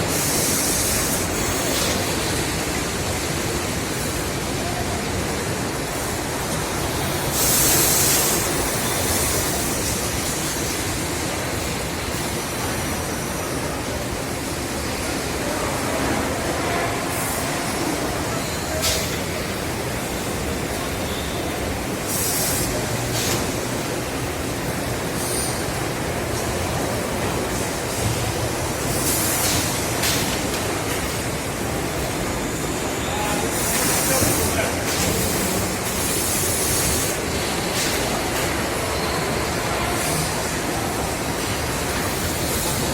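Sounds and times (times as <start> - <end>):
air hissing: 7.1 - 10.7, 32.6 - 38.2
machinery noise: 13.5 - 42.9.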